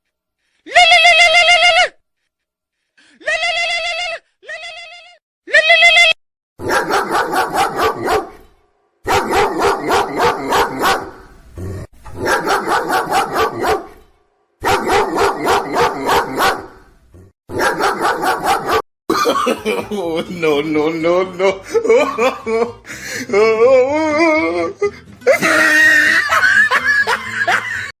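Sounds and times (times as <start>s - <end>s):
dog bark ringtone: 6.7s - 8.3s, 12.3s - 13.8s.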